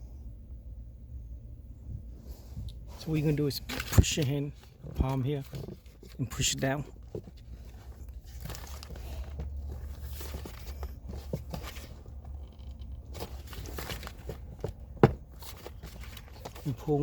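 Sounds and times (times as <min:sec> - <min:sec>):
low steady hum: 0:00.0 - 0:17.0
rubbing and crinkling: 0:02.9 - 0:17.0
hand pressing plastic glove box: 0:03.8 - 0:16.7.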